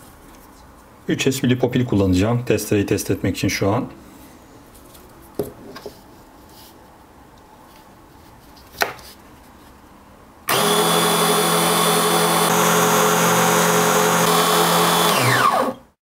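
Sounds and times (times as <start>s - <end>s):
electric motor circular saw whine: 10.5s - 16.0s.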